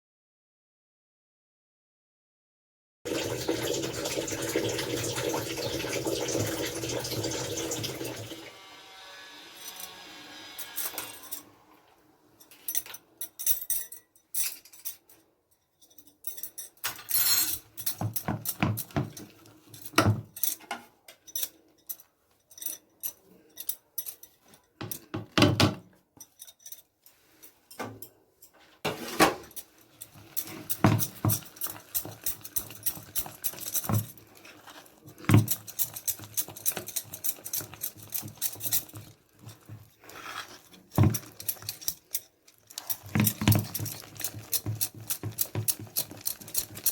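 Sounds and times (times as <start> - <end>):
metal dishes and spoons clinking: 9.6 - 11.6, 12.4 - 46.9.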